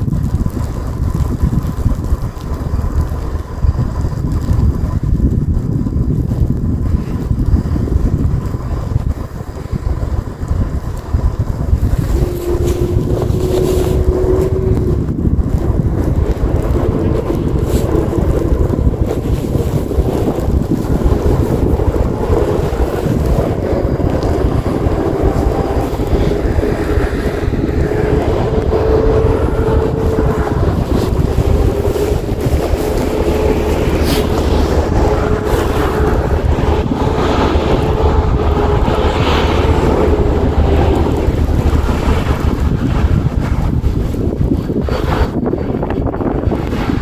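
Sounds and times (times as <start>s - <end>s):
vehicle running: 0.0s - 47.0s
wind buffeting microphone: 0.0s - 47.0s
wavering whine: 10.7s - 43.7s.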